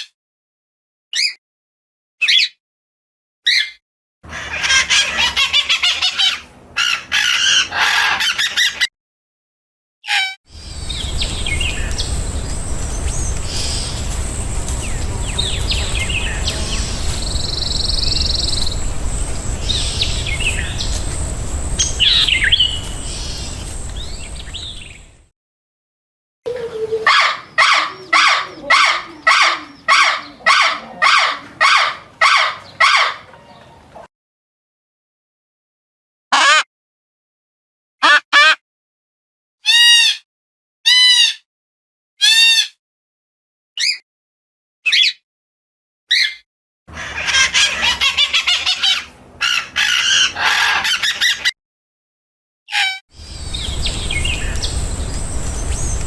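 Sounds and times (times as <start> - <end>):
birds chirping: 4.3 - 8.8, 10.5 - 25.3, 46.9 - 51.5, 53.2 - 56.0
harsh bird calls: 4.3 - 8.9, 10.1 - 25.2, 46.1 - 51.5, 52.8 - 56.0
high-pitched hum: 10.5 - 25.2, 53.2 - 56.0
low rumble: 10.5 - 25.2, 53.2 - 56.0.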